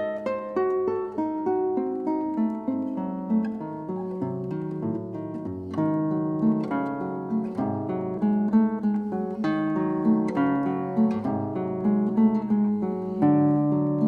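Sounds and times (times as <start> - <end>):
acoustic guitar plucking: 0.0 - 14.0.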